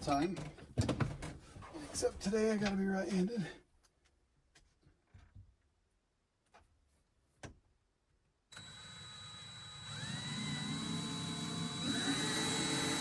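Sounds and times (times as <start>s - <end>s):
power drill drilling: 8.5s - 13.0s.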